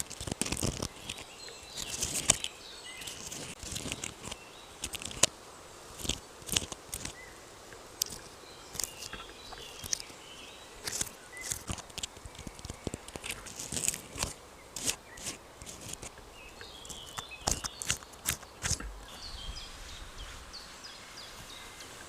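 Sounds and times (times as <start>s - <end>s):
dry leaves crackling and rustling: 0.0s - 22.0s
faint bird chirps: 7.0s - 22.0s.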